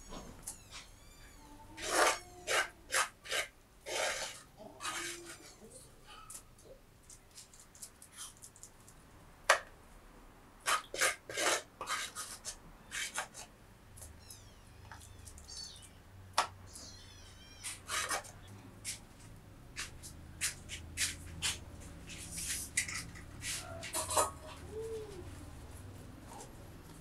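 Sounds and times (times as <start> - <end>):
scraping and rubbing strokes: 1.8 - 5.6, 10.6 - 13.5, 17.6 - 26.6.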